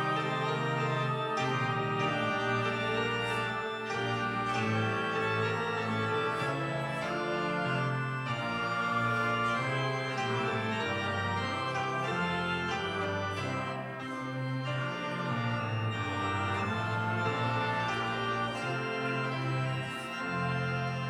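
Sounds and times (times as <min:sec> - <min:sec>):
organ playing sustained chords: 0:00.0 - 0:21.0.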